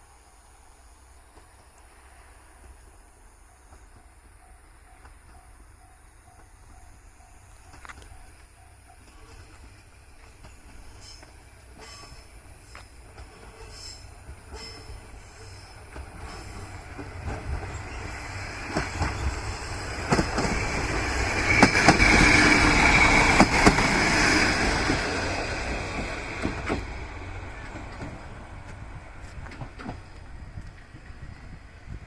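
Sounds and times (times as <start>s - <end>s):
diesel railcar rumble: 0.0s - 32.0s
wheels clacking over rail joints: 7.6s - 31.4s.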